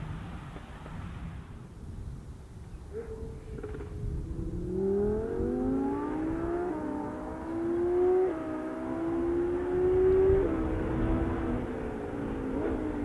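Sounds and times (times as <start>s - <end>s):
sports car engine accelerating: 3.6s - 13.0s.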